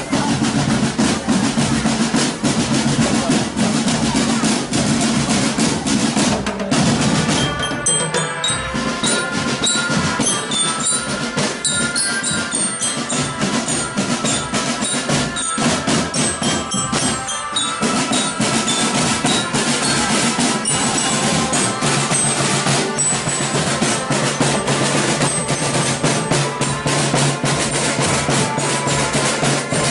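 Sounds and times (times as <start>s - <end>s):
snare and bass drums: 0.0s - 29.9s
glockenspiel melody: 7.2s - 29.9s.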